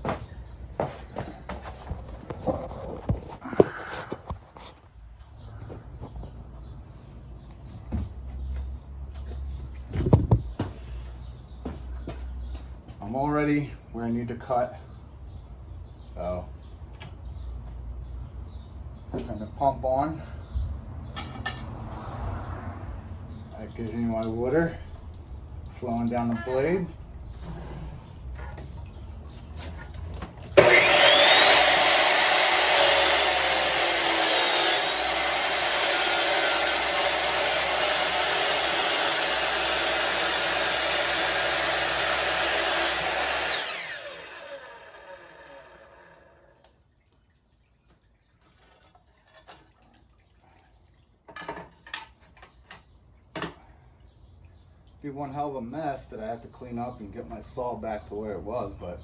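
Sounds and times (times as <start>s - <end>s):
chop saw motor whine: 30.5s - 46.6s.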